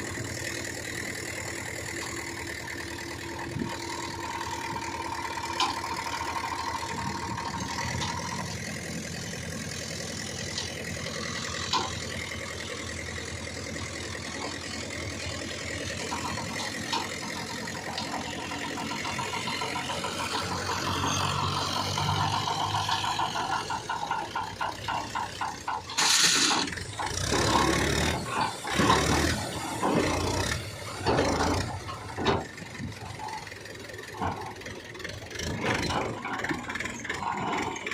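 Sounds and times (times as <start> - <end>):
heavy machinery diesel engine: 0.0 - 37.9
loud irregular noises: 3.2 - 33.3.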